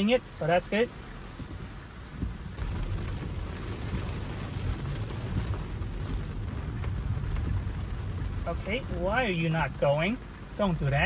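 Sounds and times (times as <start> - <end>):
heavy rain on car roof: 0.0 - 11.0
low rumble: 2.1 - 10.6.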